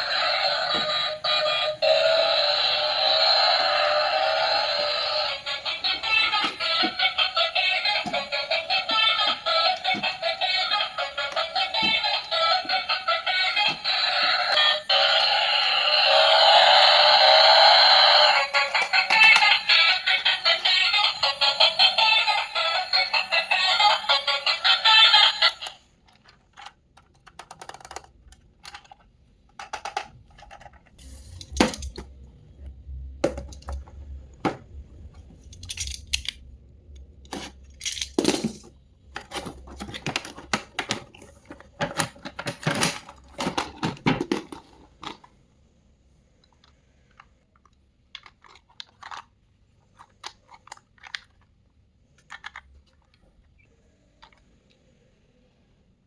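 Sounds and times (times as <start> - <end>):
plastic and cardboard rustling: 38.2 - 45.4.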